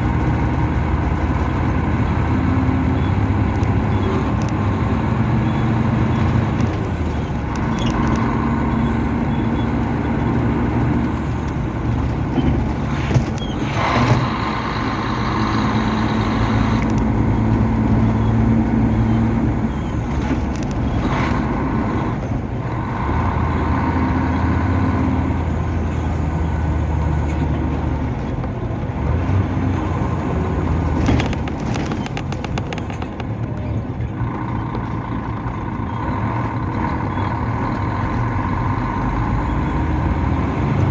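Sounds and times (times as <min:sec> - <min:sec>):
bus diesel engine running: 0:00.0 - 0:40.9
short clicks: 0:02.9 - 0:09.0, 0:13.2 - 0:17.4, 0:20.2 - 0:21.4, 0:30.9 - 0:33.4.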